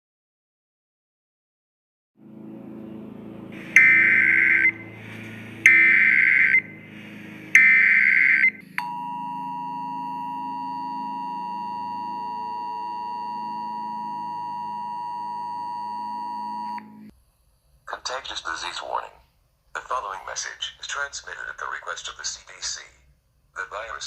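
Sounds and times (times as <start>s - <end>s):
two-tone alert signal: 3.6s - 4.8s, 5.6s - 6.7s, 7.6s - 17.0s
screechy data tone bursts: 3.6s - 4.9s, 5.6s - 6.7s, 7.6s - 8.6s.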